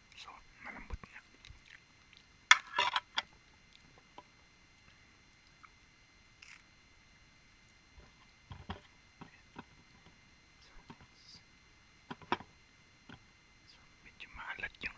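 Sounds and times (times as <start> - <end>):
crackling while eating: 0.0 - 6.8
small clicks: 6.4 - 6.7.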